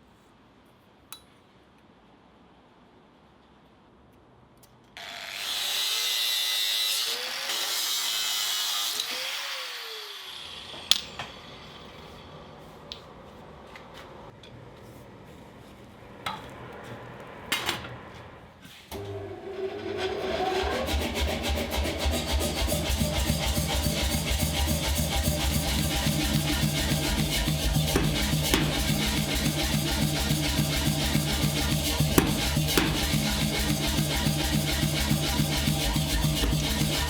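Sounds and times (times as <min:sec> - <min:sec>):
power tool running: 0:05.0 - 0:11.8, 0:19.0 - 0:37.0
sharp metallic knocks: 0:25.6 - 0:37.0.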